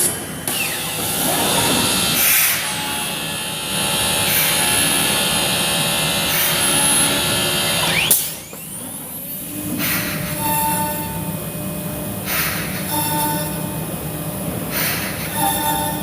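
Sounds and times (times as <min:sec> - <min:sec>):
woodworking machine cutting wood: 0:00.0 - 0:09.4.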